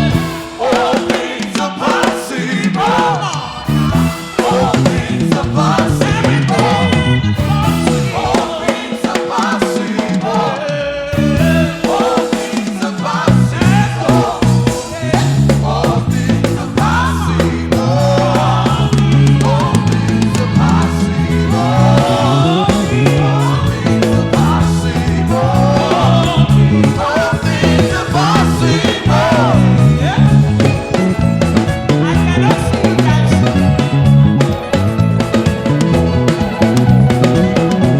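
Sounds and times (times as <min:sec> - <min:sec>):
band with bass and drums: 0:00.0 - 0:37.9
group of singers: 0:00.0 - 0:37.9.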